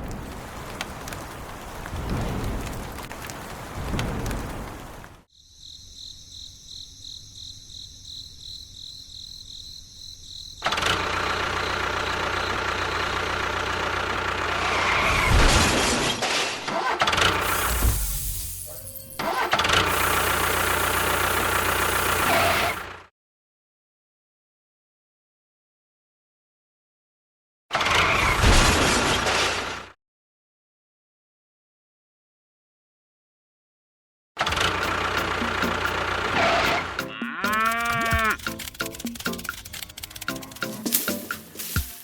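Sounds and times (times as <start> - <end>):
small motor whining: 18.9 - 22.9.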